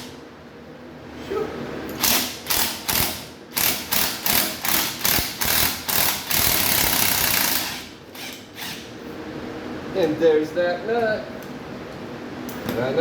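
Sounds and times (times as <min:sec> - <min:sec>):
impact wrench hammering: 0:02.0 - 0:08.5.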